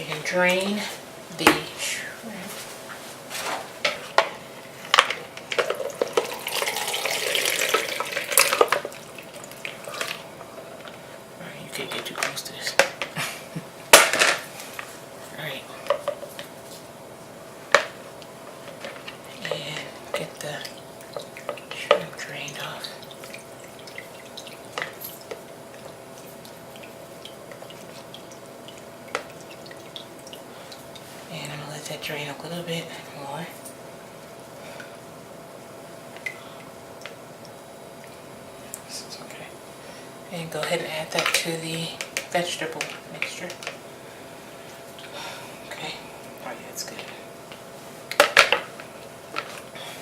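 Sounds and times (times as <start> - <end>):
liquid pouring into sink: 5.6 - 11.0
water dripping: 5.9 - 11.0, 19.5 - 31.1.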